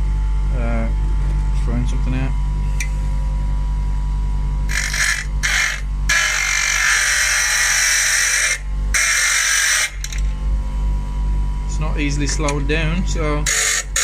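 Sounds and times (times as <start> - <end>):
bench grinder motor hum: 4.6 - 10.3, 12.4 - 14.0.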